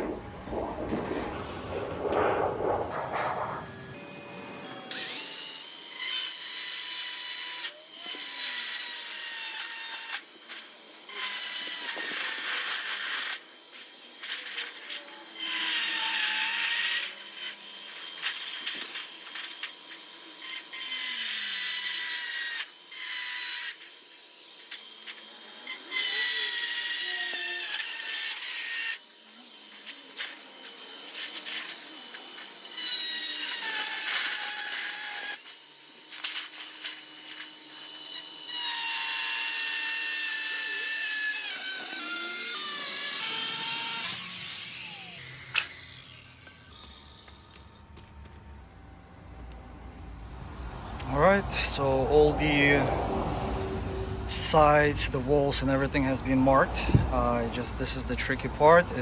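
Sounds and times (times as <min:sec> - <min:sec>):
tool scraping on sheet metal: 0:00.0 - 0:04.0.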